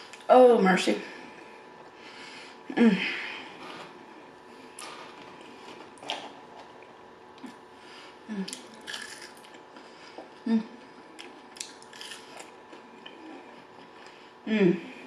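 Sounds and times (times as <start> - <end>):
person chewing food: 8.4 - 14.3
clicks and crunches: 8.5 - 9.6, 11.2 - 12.8.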